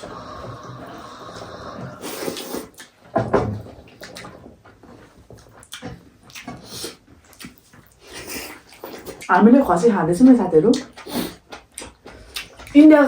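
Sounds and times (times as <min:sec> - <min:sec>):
soup slurping and chewing: 0:00.0 - 0:03.0, 0:05.0 - 0:09.4, 0:10.8 - 0:13.0.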